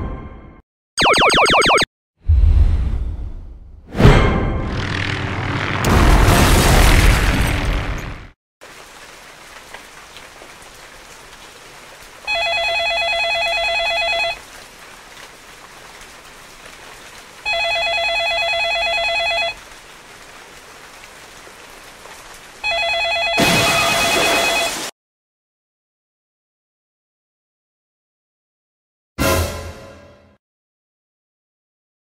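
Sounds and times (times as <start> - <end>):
telephone ringing: 1.0 - 1.8, 12.3 - 14.4, 17.5 - 19.6, 22.6 - 24.8.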